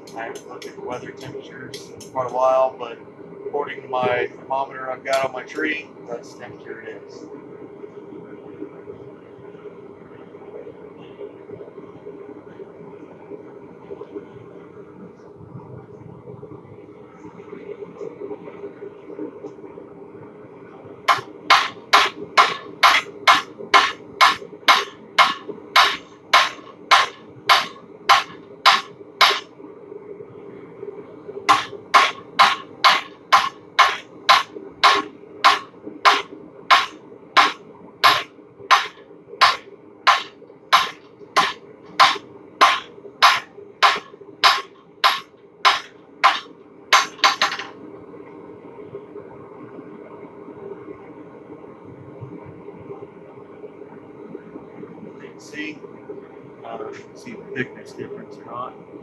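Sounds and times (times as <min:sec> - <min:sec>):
steady hum: 0:00.0 - 0:59.0
hammer striking steel on anvil: 0:00.1 - 0:02.2, 0:05.1 - 0:05.7, 0:21.1 - 0:29.5, 0:31.5 - 0:47.7.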